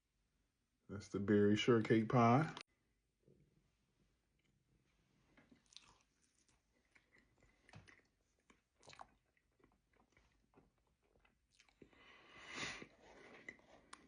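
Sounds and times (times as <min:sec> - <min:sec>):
crunchy pie chewing: 0:05.3 - 0:12.0.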